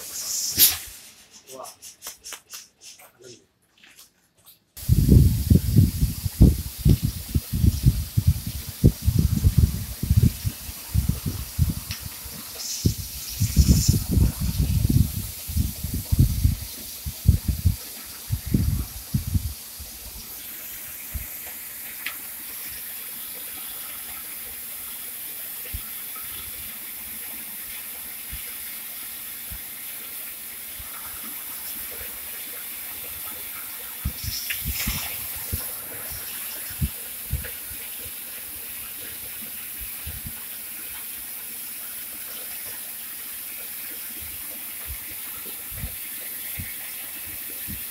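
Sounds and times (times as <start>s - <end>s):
cutting torch hissing: 0.0s - 2.4s, 4.8s - 40.4s.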